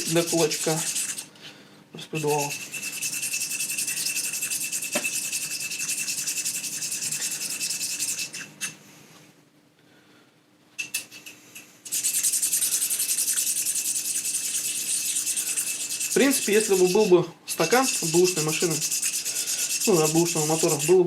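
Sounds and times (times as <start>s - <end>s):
metal scraping on whetstone: 0.0s - 1.3s, 11.9s - 21.0s.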